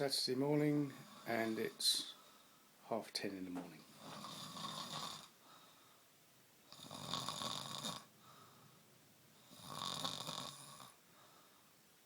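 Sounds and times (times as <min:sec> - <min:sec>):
person snoring: 0:03.8 - 0:05.3, 0:06.7 - 0:08.1, 0:09.4 - 0:11.0.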